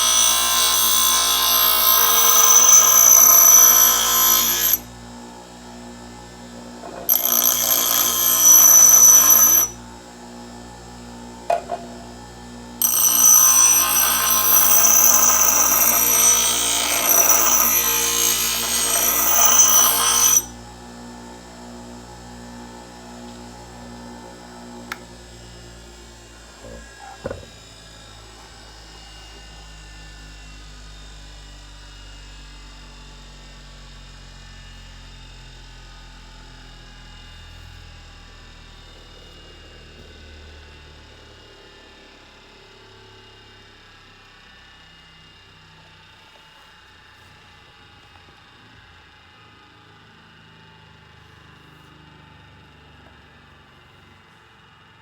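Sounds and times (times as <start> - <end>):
shrill grinding of steel on wheel: 0.0 - 4.9, 6.8 - 9.8, 12.8 - 20.6
grinder motor hum: 0.0 - 5.3, 6.1 - 9.9, 11.5 - 20.8.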